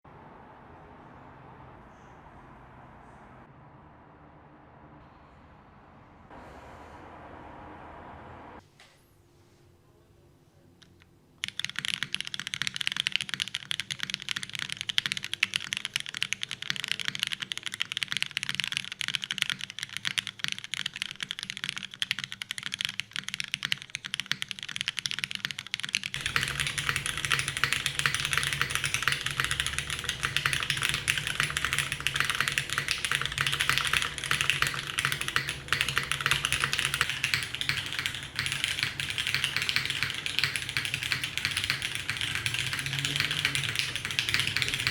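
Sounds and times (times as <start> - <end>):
typing on mechanical keyboard: 10.8 - 44.9.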